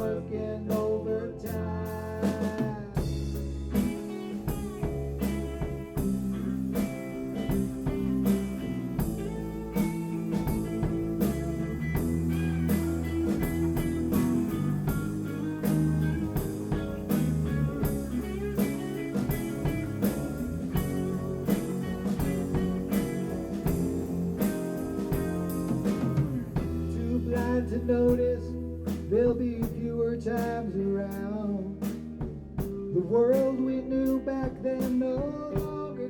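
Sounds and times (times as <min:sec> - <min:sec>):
bass guitar: 0:00.0 - 0:36.0
drum kit beat: 0:00.0 - 0:36.0
guitar melody with bent notes: 0:03.0 - 0:29.4.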